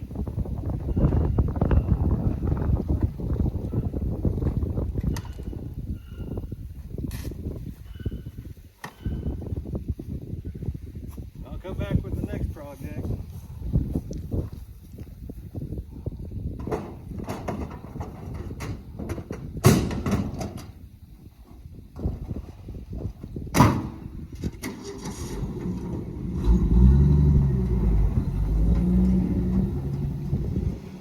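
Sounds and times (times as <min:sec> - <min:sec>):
vehicle engine starting and running: 0:24.5 - 0:31.0.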